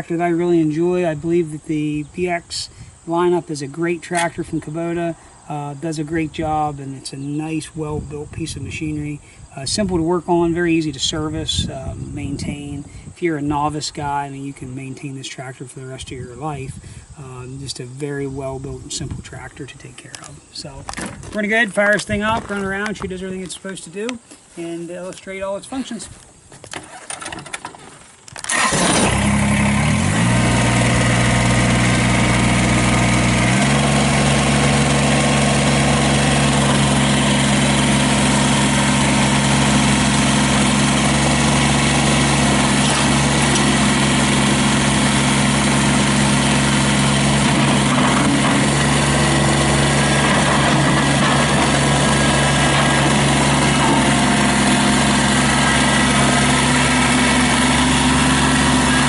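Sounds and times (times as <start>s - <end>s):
diesel tractor engine: 0.0s - 10.0s, 26.8s - 59.0s.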